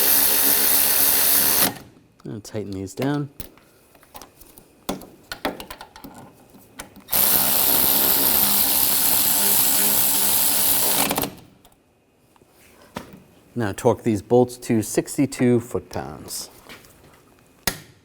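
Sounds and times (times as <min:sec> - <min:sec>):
power tool running: 0:00.0 - 0:01.8, 0:07.1 - 0:11.3.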